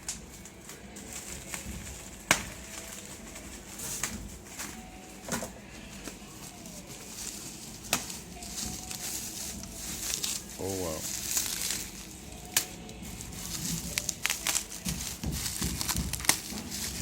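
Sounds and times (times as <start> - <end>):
packaging and parts clicking: 0.0 - 17.0.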